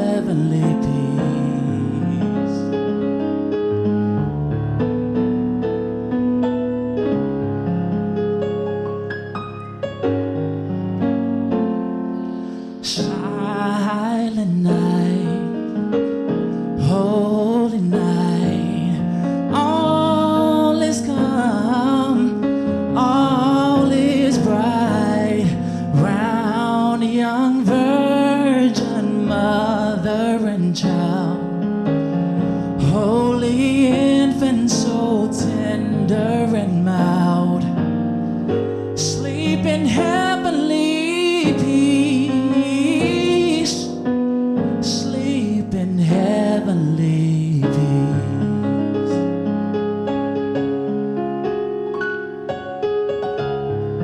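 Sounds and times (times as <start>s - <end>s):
person singing: 0.0s - 3.0s, 12.3s - 31.6s, 32.4s - 38.0s, 38.6s - 49.4s
piano accompaniment: 0.0s - 54.0s.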